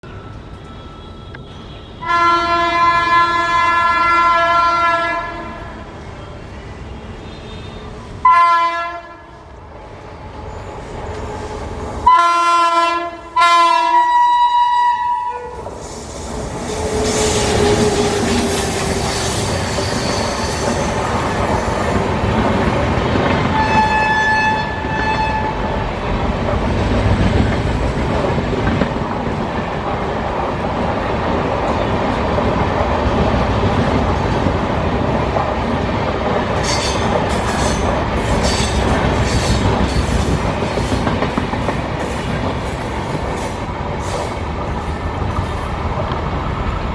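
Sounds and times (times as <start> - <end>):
train running over rails: 0.0 - 46.9
locomotive horn blasts: 0.8 - 5.7, 7.2 - 9.4, 12.0 - 15.6, 23.5 - 25.8.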